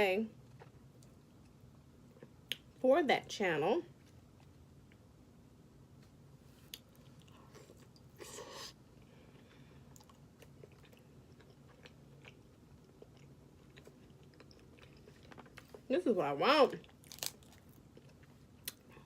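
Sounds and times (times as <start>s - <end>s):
faint chewing: 6.0s - 15.9s, 16.8s - 19.0s.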